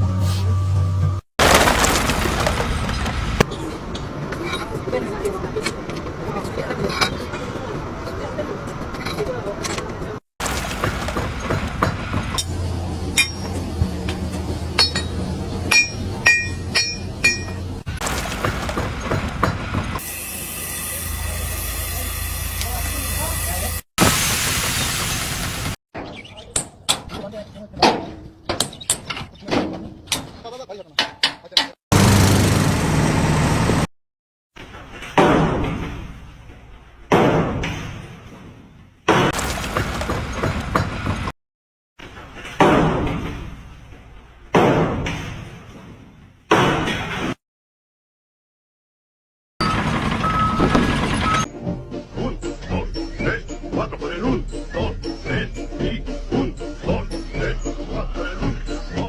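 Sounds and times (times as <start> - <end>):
heavy slams: 50.5 - 51.3.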